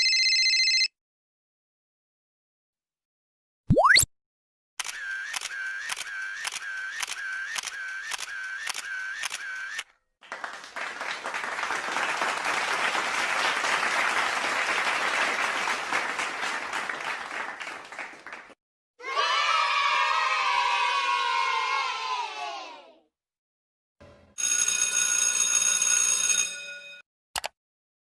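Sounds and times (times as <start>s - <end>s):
applause: 10.2s - 18.6s
sharp clicks with tones: 27.4s - 27.6s.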